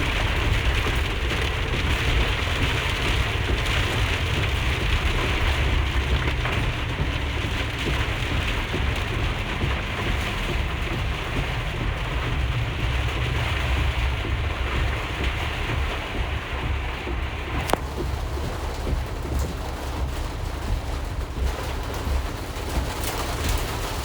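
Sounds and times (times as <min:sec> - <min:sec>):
heavy rain drumming on van: 0:00.0 - 0:24.0
tyres on wet road: 0:00.0 - 0:24.0.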